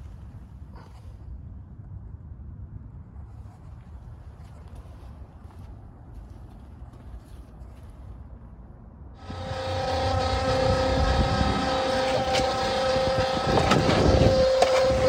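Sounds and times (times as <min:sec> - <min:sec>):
motor-driven machine humming: 0:09.2 - 0:15.0.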